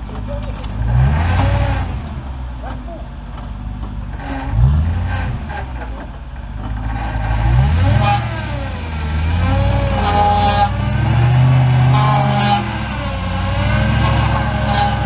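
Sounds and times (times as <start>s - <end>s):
engine revving hard: 0.7s - 2.4s, 4.1s - 6.0s, 6.6s - 15.0s.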